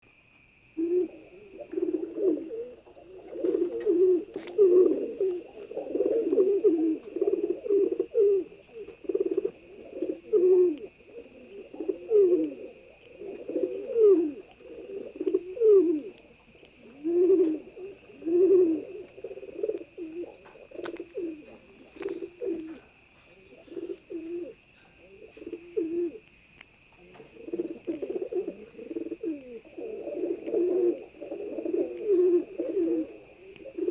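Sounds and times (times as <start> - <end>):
faint high whine: 0.0 - 33.9
pigeons cooing: 0.8 - 33.9.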